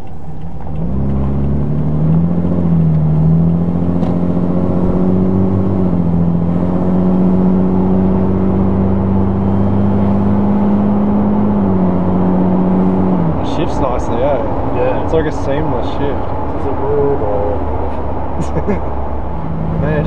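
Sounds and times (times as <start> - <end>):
engine pulling under load: 0.0 - 5.8.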